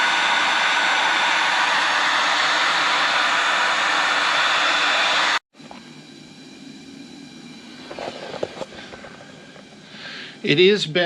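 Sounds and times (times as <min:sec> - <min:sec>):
heat gun hissing: 0:00.0 - 0:05.4, 0:06.5 - 0:11.0.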